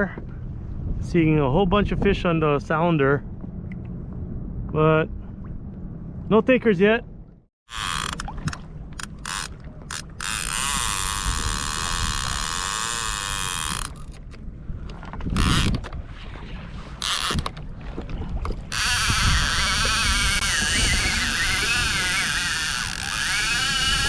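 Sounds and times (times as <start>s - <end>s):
fishing reel drag buzzing: 7.7s - 8.3s, 9.0s - 14.2s, 15.4s - 15.8s, 17.0s - 17.5s, 18.7s - 24.0s.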